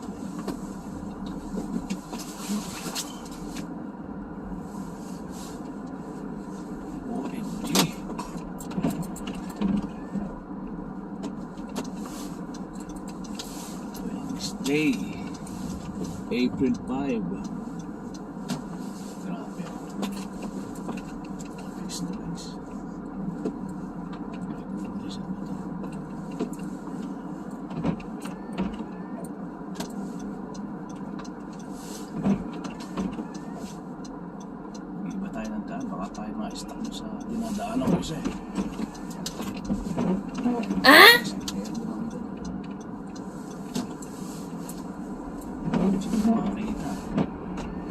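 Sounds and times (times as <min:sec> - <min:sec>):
car engine hum: 0:00.0 - 0:28.4.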